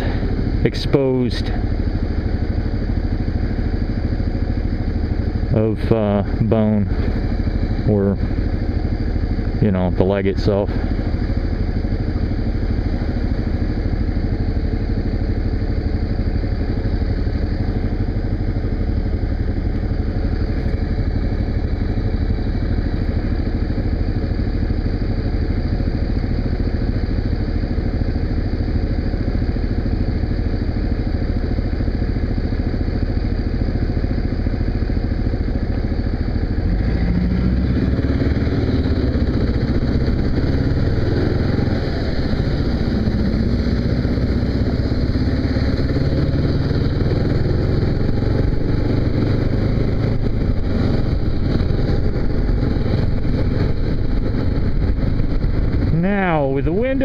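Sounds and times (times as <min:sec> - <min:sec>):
motorcycle engine running: 0:00.0 - 0:57.0
wind and road noise: 0:00.0 - 0:57.0.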